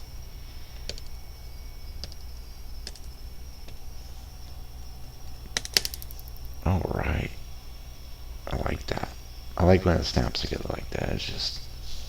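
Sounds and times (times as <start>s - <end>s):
plastic bricks snapping together: 5.5s - 6.2s.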